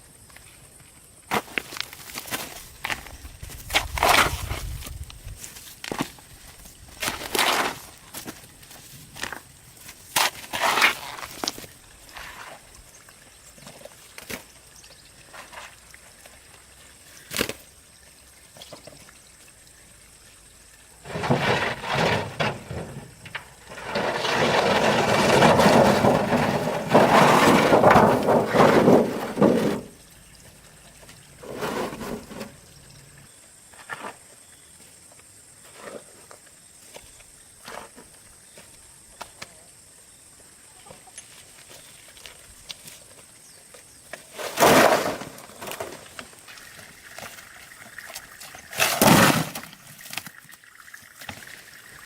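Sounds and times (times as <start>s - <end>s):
water pouring and splashing: 44.4s - 52.0s.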